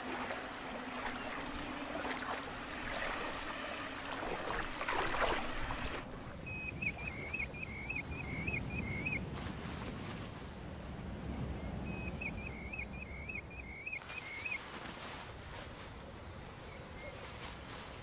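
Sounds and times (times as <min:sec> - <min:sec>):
water splashing and sloshing: 0:00.0 - 0:08.3.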